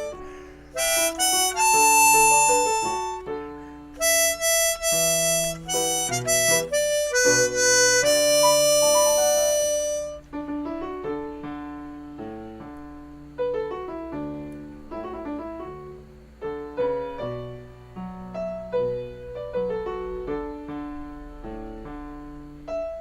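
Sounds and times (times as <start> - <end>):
harmonica long note: 0.0 - 10.3
piano notes and chords: 0.0 - 23.0.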